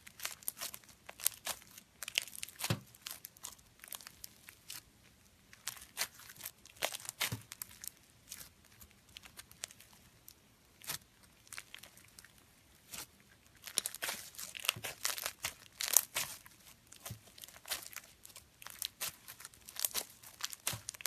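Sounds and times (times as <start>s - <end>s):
slime crackling and popping: 0.0s - 21.0s.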